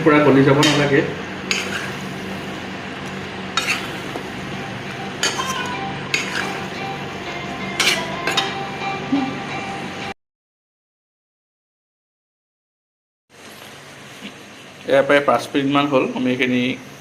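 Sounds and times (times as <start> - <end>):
food sizzling in a pan: 0.2 - 10.0, 13.3 - 17.0
metal utensil scraping a pan: 0.6 - 2.3, 3.5 - 4.2, 5.0 - 7.0, 7.6 - 8.7.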